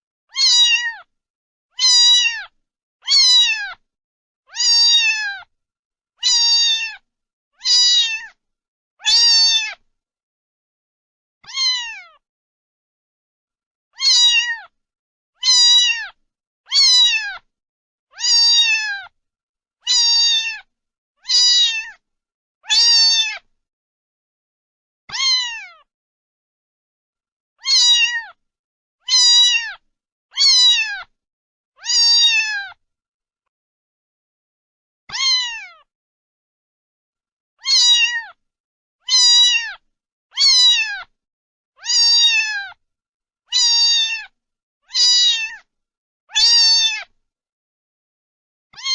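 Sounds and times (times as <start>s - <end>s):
cat meowing: 0.3s - 1.1s, 1.7s - 3.8s, 4.5s - 5.5s, 6.2s - 7.0s, 7.6s - 8.4s, 9.0s - 9.8s, 11.4s - 12.2s, 14.0s - 14.8s, 15.4s - 17.5s, 18.1s - 19.2s, 19.8s - 22.0s, 22.6s - 23.5s, 25.1s - 25.9s, 27.6s - 28.4s, 29.0s - 29.8s, 30.4s - 31.1s, 31.8s - 32.8s, 35.1s - 35.9s, 37.6s - 38.4s, 39.0s - 41.1s, 41.8s - 42.8s, 43.5s - 45.7s, 46.3s - 47.1s.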